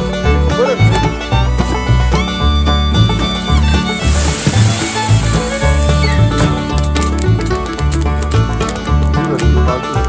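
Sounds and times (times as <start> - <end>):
banjo: 0.0 - 10.0
bluegrass music: 0.0 - 10.0
fiddle: 0.0 - 10.0
pulsing bass line: 0.0 - 10.0
high hiss: 3.8 - 6.5.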